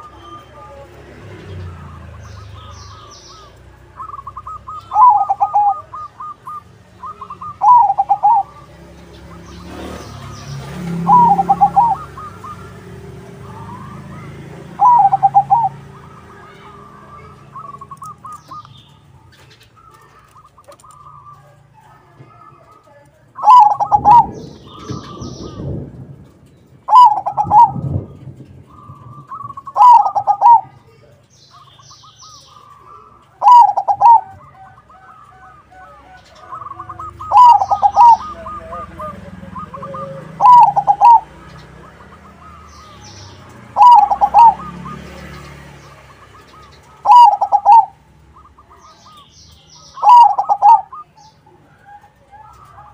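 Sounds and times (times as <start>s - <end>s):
dove cooing: 1.5s - 26.2s, 26.9s - 52.9s
softer trilling coos: 3.3s - 8.6s, 11.0s - 12.6s, 13.5s - 18.6s, 32.6s - 41.4s, 43.8s - 45.0s, 47.0s - 49.2s, 49.9s - 51.2s
faint high bird chirps: 13.5s - 22.7s.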